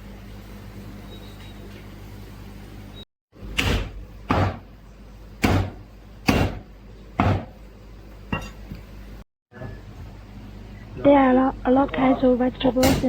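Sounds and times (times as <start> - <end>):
cleaver chopping meat on wooden block: 3.6 - 4.6, 5.4 - 6.6, 7.2 - 7.5.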